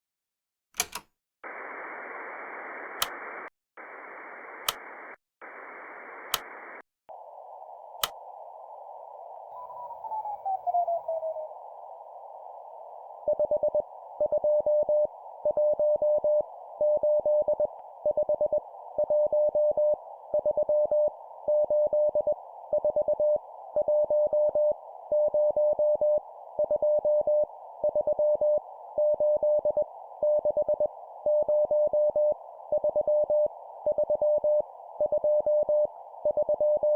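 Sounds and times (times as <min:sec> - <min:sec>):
sharp clicks: 0:00.8 - 0:01.1, 0:02.9 - 0:03.4, 0:04.6 - 0:05.1, 0:06.2 - 0:06.8, 0:08.0 - 0:08.2
radio static: 0:01.4 - 0:09.0
falling whistle: 0:09.5 - 0:11.5.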